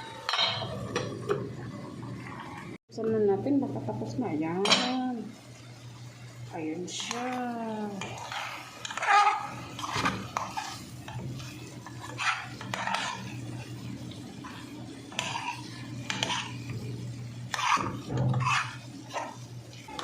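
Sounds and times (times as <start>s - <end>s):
steady low hum: 0.4s - 20.0s
metal spoon scraping a pan: 6.9s - 20.0s.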